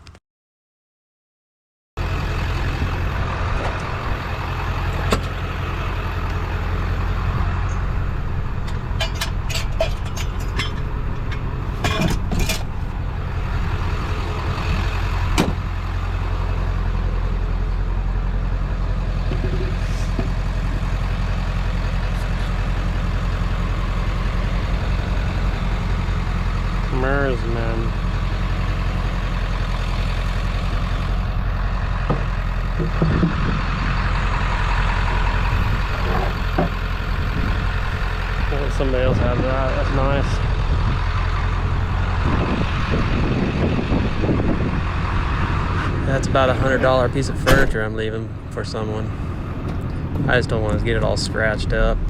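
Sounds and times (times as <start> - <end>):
truck engine droning: 2.0 - 52.0
sharp clicks and rattles: 8.6 - 12.8.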